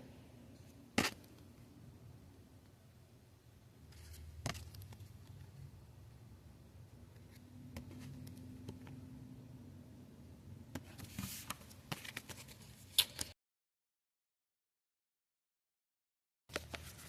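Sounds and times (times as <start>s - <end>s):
light paper rustling: 3.9s - 5.6s, 10.8s - 13.4s, 16.5s - 17.0s.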